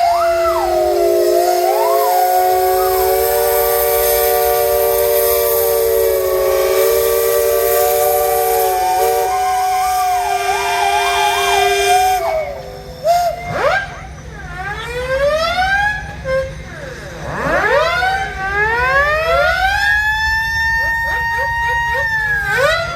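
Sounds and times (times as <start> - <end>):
steam whistles blowing chord: 0.0 - 15.1.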